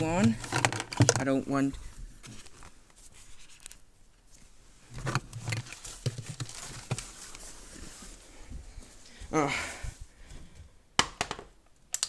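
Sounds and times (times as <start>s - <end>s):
plastic parts knocking and clicking: 0.0s - 1.4s, 11.0s - 12.0s.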